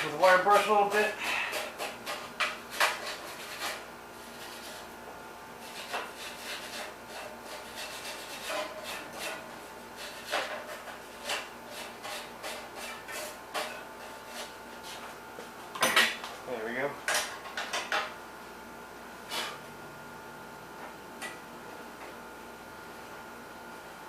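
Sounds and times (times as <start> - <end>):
wire brush scrubbing metal: 0.0 - 4.9, 5.6 - 15.0.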